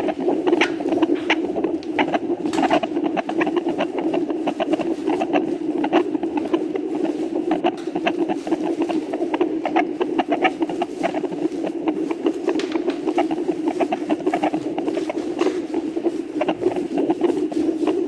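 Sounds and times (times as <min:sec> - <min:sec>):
doppler heartbeat whooshing: 0:00.0 - 0:18.0
steady hiss: 0:00.0 - 0:18.0.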